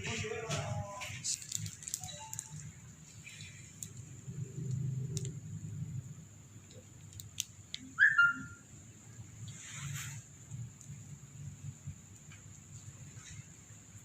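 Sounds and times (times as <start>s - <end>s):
high-pitched chirp: 7.9s - 8.6s.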